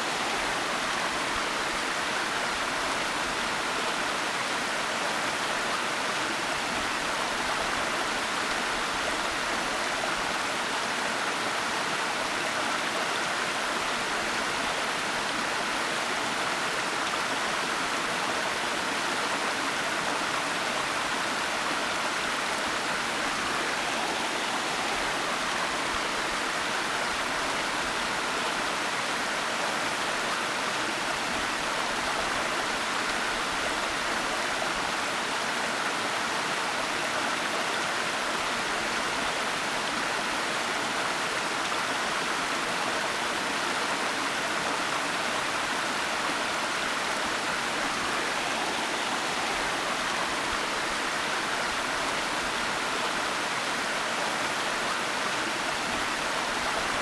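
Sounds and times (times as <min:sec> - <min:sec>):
waterfall rushing: 0:22.6 - 0:28.0, 0:44.4 - 0:57.0.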